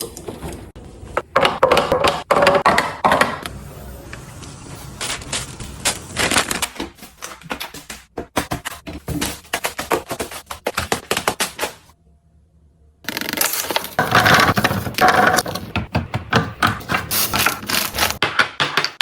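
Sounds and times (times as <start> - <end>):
food packaging crinkling: 13.1 - 15.7, 16.9 - 18.2
containers clicking and tapping: 13.2 - 19.0.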